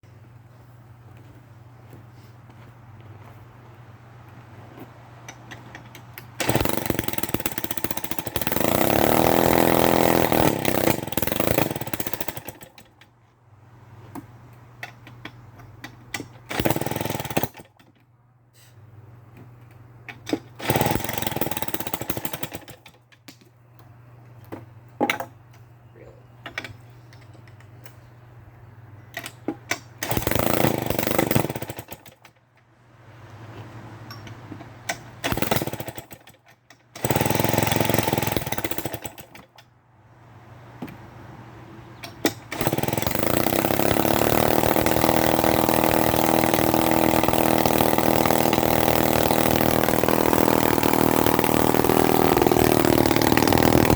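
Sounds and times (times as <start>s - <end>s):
chainsaw engine starting and running: 6.4s - 12.9s, 16.5s - 17.7s, 20.5s - 22.9s, 30.0s - 32.2s, 35.2s - 39.5s, 42.3s - 53.9s.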